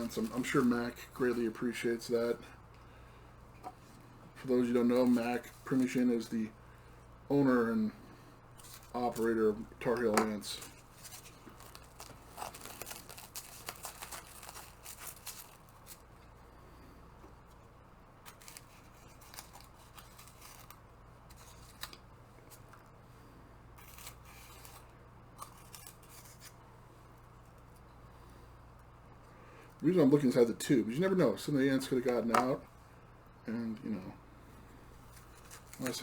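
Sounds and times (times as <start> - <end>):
rustling: 10.3 - 16.1.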